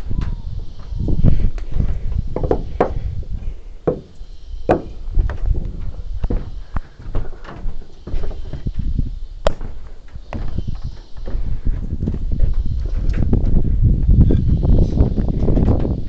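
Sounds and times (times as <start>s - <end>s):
timber pieces knocking together: 3.9s - 5.0s.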